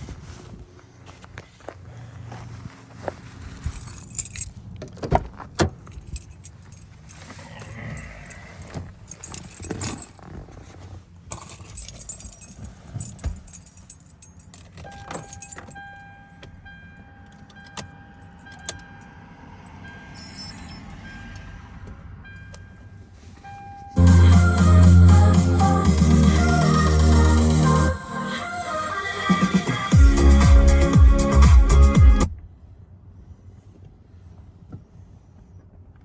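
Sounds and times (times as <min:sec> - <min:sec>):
car keys jangling: 0:03.4 - 0:21.1, 0:22.2 - 0:24.0.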